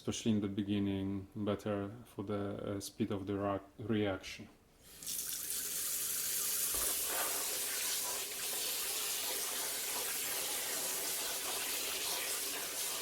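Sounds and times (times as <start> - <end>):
water running into a container: 4.9 - 13.0.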